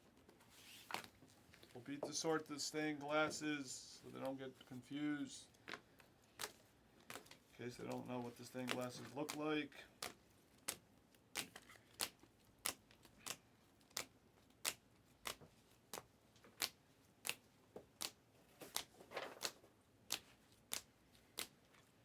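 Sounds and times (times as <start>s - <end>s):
rustle of handled cards: 0.2s - 22.0s
trading cards snapping down: 8.6s - 9.4s.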